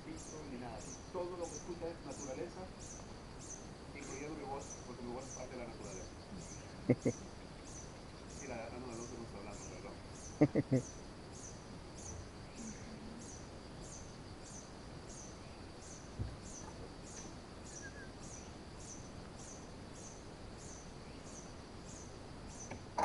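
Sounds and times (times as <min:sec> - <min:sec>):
hummingbird chirping: 0:00.0 - 0:22.8
faint insect drone: 0:00.0 - 0:23.0
soft thump: 0:16.2 - 0:16.4.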